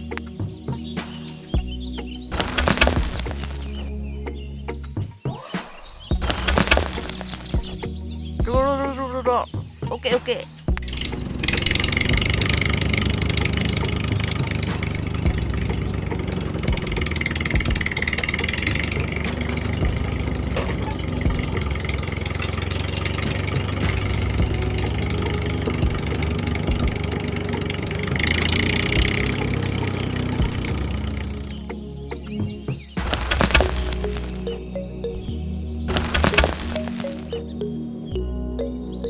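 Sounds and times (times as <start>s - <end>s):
small engine chugging: 10.9s - 31.8s.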